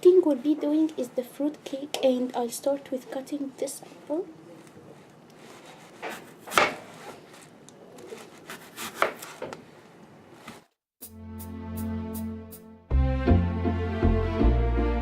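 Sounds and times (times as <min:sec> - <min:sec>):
knife cutting on cutting board: 0:05.4 - 0:09.6
background music: 0:11.0 - 0:15.0.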